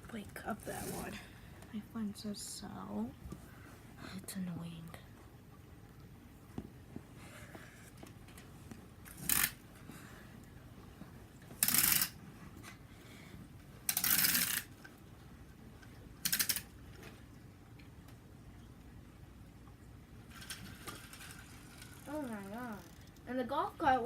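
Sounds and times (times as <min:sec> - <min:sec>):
toy cars rattling: 0:09.1 - 0:09.6, 0:11.6 - 0:12.2, 0:13.9 - 0:14.7, 0:16.2 - 0:16.7, 0:20.3 - 0:23.2.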